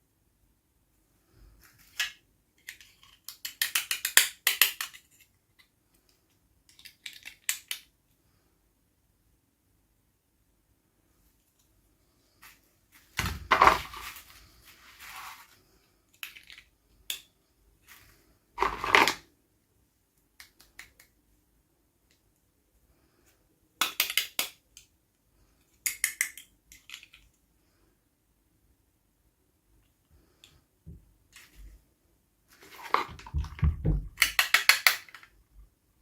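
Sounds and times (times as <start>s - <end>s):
toy packaging crinkling: 18.6s - 19.2s.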